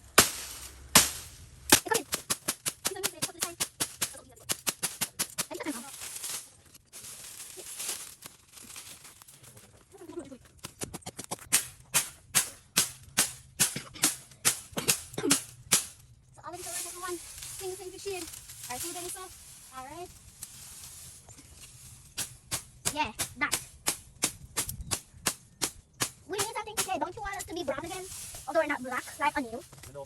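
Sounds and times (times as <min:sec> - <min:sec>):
rapid sharp knocks: 0:00.2 - 0:05.6.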